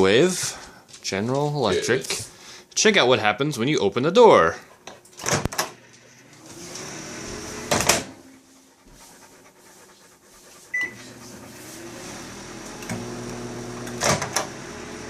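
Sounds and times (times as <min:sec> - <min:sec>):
microwave oven hum: 0:12.0 - 0:15.0.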